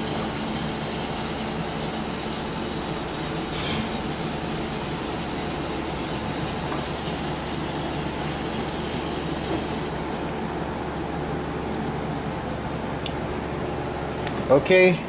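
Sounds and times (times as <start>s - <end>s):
vehicle lift hissing: 0.0s - 10.1s.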